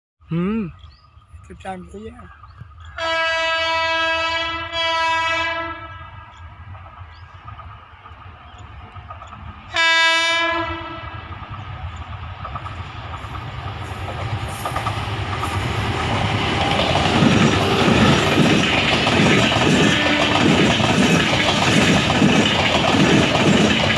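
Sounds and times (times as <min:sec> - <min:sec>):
train rumble and wheel clatter: 0:01.3 - 0:23.9
locomotive air horn blast: 0:03.0 - 0:06.2, 0:09.7 - 0:11.2, 0:19.9 - 0:20.4.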